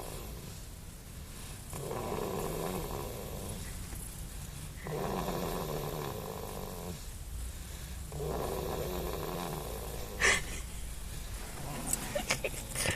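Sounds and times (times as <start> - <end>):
baby snoring: 1.7 - 3.7, 4.8 - 7.1, 8.1 - 10.5.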